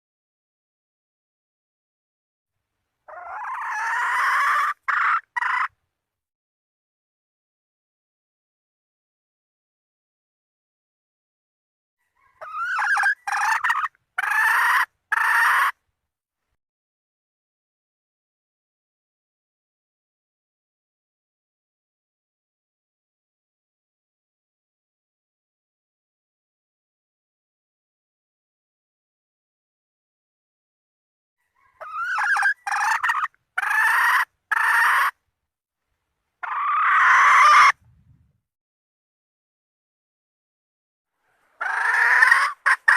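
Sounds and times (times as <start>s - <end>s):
junglefowl hen calling: 3.0s - 5.8s, 12.0s - 15.8s, 31.4s - 35.2s, 36.4s - 37.8s, 41.3s - 42.9s.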